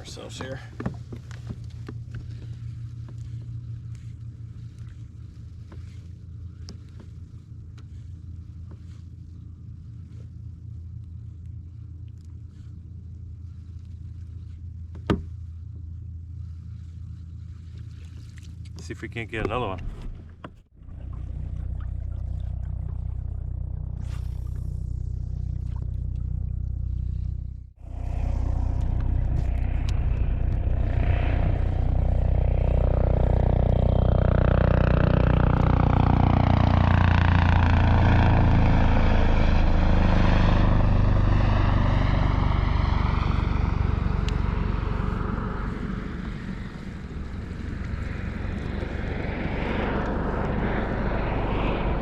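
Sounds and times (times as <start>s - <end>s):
helicopter flying overhead: 0.0s - 0.9s, 20.7s - 52.0s.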